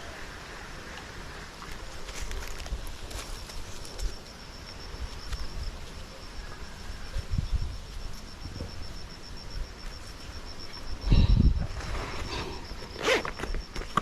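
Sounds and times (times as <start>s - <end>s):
insect trilling: 3.2s - 14.0s.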